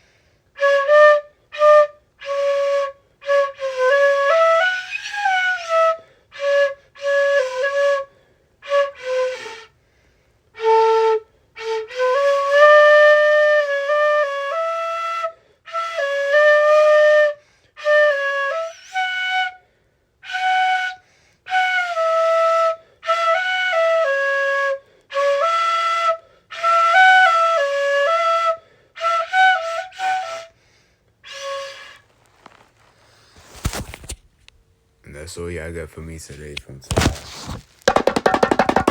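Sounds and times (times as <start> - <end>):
solo flute melody: 0.5 - 9.8, 10.5 - 30.6, 31.2 - 32.6.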